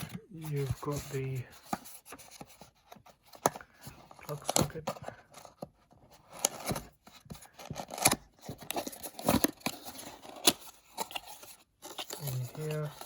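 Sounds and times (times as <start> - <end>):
packaging rustling and tearing: 4.1 - 13.0.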